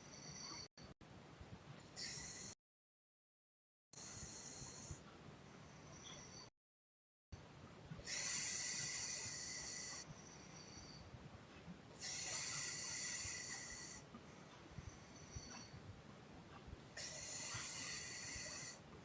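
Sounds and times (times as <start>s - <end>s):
woman breathing while asleep: 0.0s - 0.7s, 1.8s - 2.6s, 4.0s - 6.5s, 8.0s - 11.2s, 11.9s - 18.9s.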